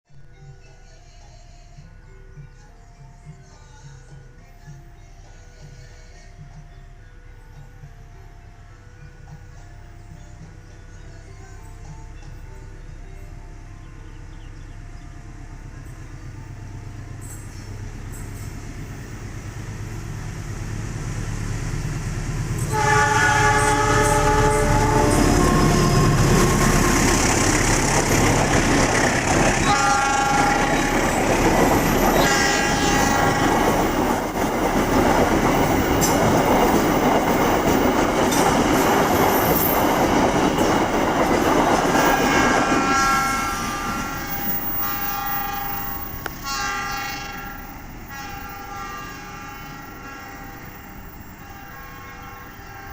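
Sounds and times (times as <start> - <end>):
train rumble: 0.2 - 52.9
wheels clattering on rails: 15.8 - 48.4
locomotive horn: 22.5 - 35.0, 41.9 - 52.9.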